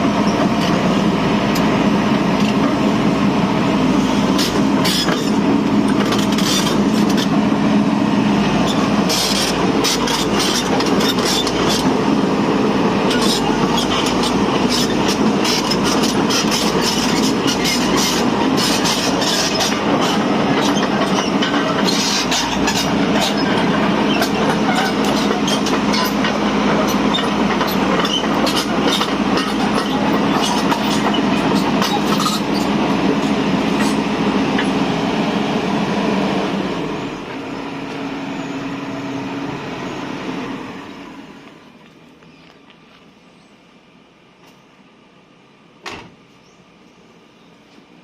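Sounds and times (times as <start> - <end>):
diesel engine under load: 0.0 - 48.0
metallic clanking and squeaking: 4.3 - 7.4, 8.6 - 12.0, 13.0 - 34.8.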